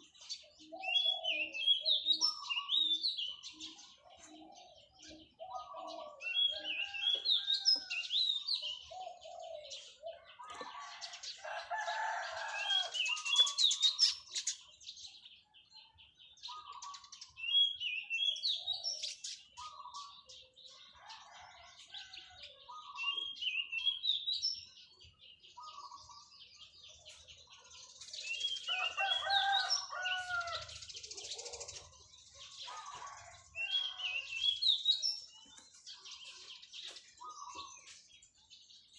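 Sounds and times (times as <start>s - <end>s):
small birds chirping: 0.0s - 38.9s
dove cooing: 0.6s - 2.7s, 3.3s - 7.2s, 8.8s - 11.0s, 31.1s - 32.0s.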